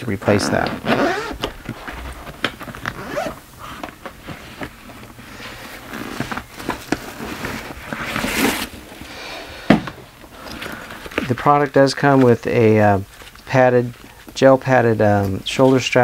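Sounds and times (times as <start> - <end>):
bag zipper being zipped: 0.3 - 8.7
bag rustling and clicks: 0.3 - 9.1.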